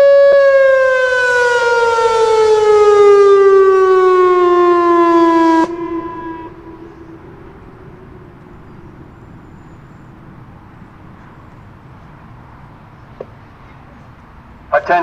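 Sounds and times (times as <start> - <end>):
electronic warning siren tone: 0.0 - 10.7
siren echo: 0.0 - 11.1
faint outdoor background noise: 0.0 - 15.0.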